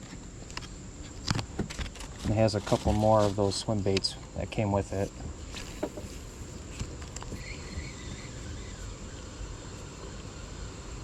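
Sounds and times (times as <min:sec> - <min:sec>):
insect chorus: 0:00.0 - 0:11.0
river ambience: 0:03.4 - 0:11.0
faint chirp: 0:07.3 - 0:11.0.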